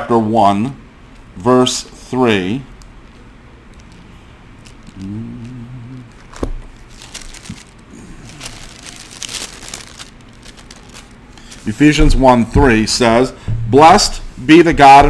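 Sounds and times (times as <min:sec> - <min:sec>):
pages rustling: 0:02.4 - 0:12.0.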